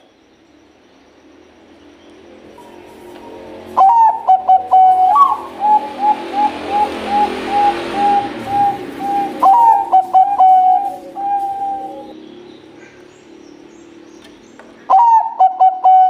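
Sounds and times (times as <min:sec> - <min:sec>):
dove cooing: 0:02.6 - 0:13.1, 0:14.9 - 0:16.0.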